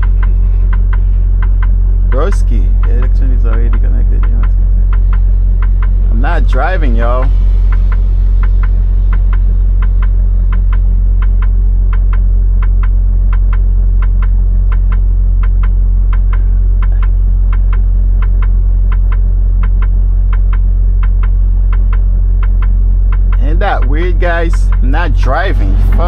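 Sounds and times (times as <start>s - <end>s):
diesel engine idling: 0.0s - 26.0s
flasher relay ticking: 0.0s - 26.0s.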